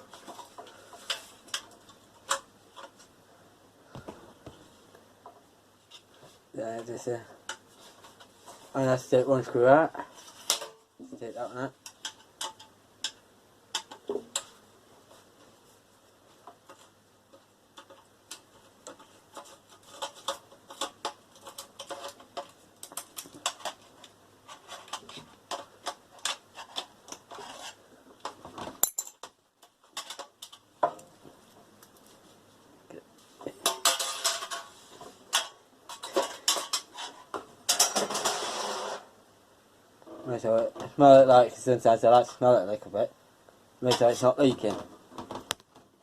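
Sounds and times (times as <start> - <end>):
metal parts clinking: 28.8 - 29.3.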